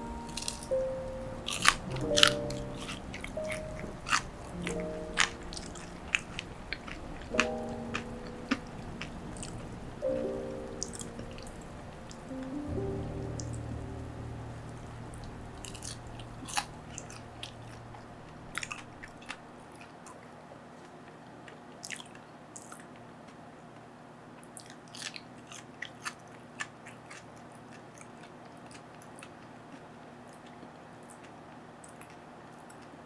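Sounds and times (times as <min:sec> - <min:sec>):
background music: 0:00.0 - 0:19.3
person biting and chewing: 0:00.3 - 0:00.8, 0:01.4 - 0:08.6, 0:18.5 - 0:19.4.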